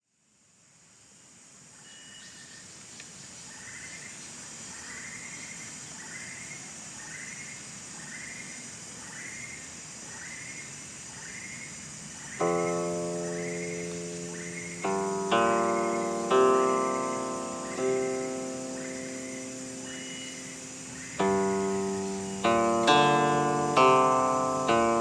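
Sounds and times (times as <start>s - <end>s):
insects droning: 0.1s - 25.0s
plucked string note: 12.4s - 25.0s.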